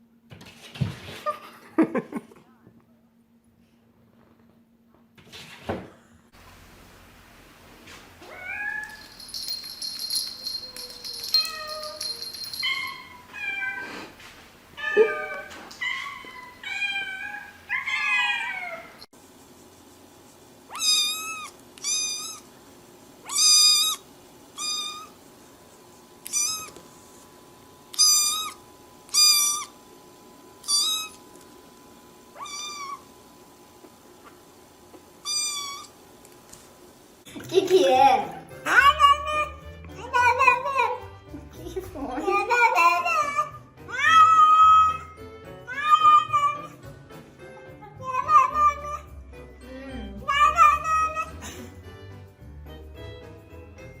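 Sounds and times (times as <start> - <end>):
cats meowing: 10.6 - 14.2, 14.8 - 19.0, 20.7 - 22.5, 23.3 - 24.0, 26.2 - 26.8, 32.4 - 33.1, 35.2 - 35.9, 43.0 - 45.1, 45.7 - 46.8, 50.2 - 51.4.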